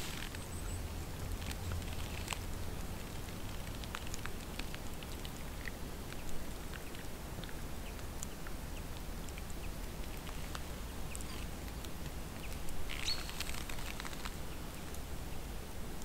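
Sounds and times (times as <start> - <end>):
low steady rumble: 0.0 - 16.0
small birds chirping: 5.3 - 15.4.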